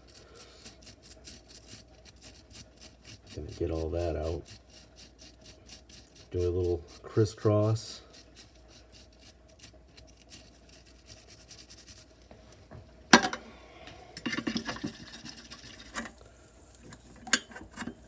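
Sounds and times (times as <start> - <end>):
brush scrubbing steel blade: 0.0 - 12.2, 14.6 - 16.1.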